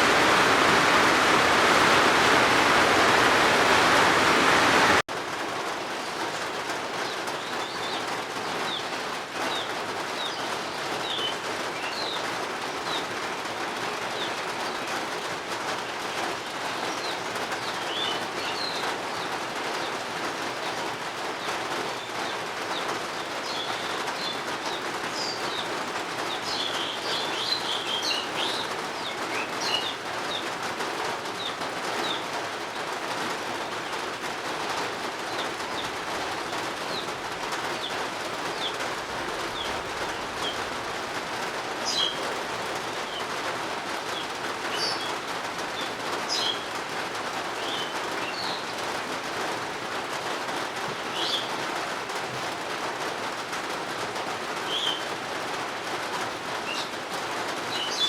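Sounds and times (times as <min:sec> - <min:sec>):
heavy rain hissing: 0:00.0 - 0:58.0
soft steady rain: 0:00.0 - 0:58.0
small birds chirping: 0:06.0 - 0:13.1, 0:16.1 - 0:30.5, 0:31.3 - 0:32.7, 0:33.6 - 0:46.8, 0:47.5 - 0:48.8, 0:51.0 - 0:51.6, 0:54.6 - 0:55.1, 0:57.7 - 0:58.0.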